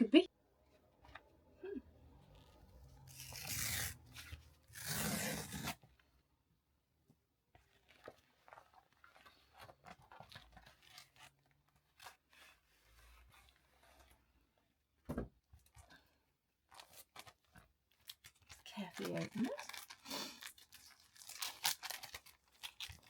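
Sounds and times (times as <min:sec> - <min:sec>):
package ripping: 0:03.1 - 0:05.8, 0:18.0 - 0:23.0
packaging crinkling and rustling: 0:16.7 - 0:23.0.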